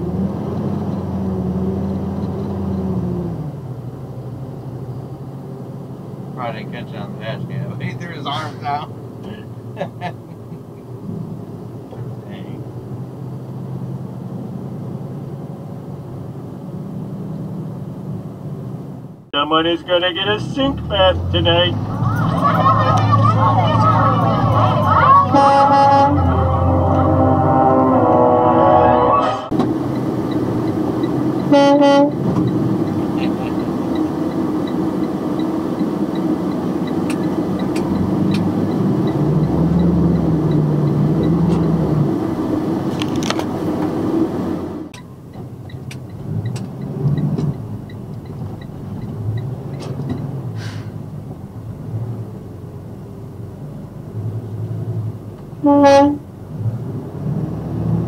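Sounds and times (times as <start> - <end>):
truck engine and road noise: 0.0 - 58.0
truck horn blasts: 21.2 - 29.6, 31.4 - 32.2, 55.6 - 56.3
faint regular ticking: 44.9 - 50.3.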